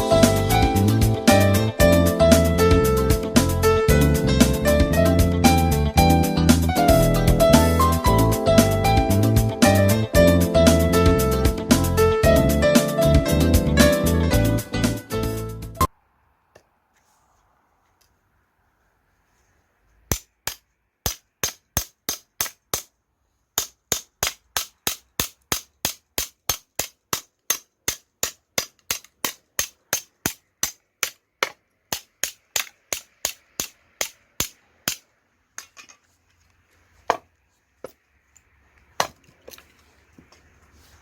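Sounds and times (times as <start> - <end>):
axe strikes on wood: 20.1 - 22.9, 23.6 - 35.1, 37.1 - 37.3.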